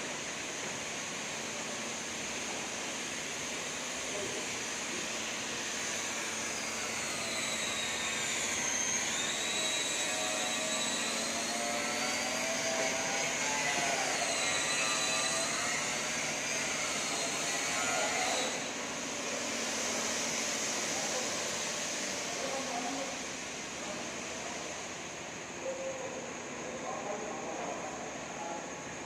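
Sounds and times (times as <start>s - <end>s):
machine motor whining: 5.1s - 24.6s.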